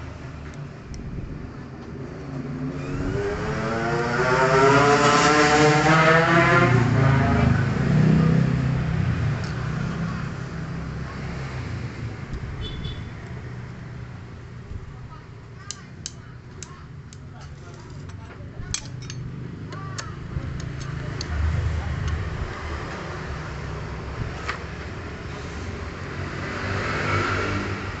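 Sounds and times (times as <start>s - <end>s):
vehicle engine revving: 2.3s - 10.3s, 19.4s - 28.0s.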